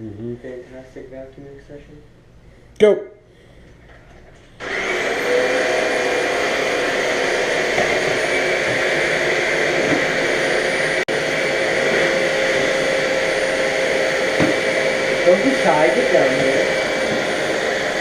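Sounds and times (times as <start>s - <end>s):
vacuum cleaner running: 4.5s - 18.0s.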